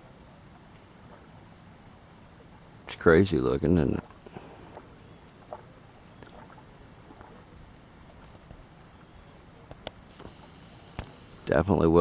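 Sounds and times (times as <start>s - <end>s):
insects droning: 0.0s - 12.0s
quiet lakeside ambience: 0.0s - 12.0s
faint ticks: 9.6s - 11.6s.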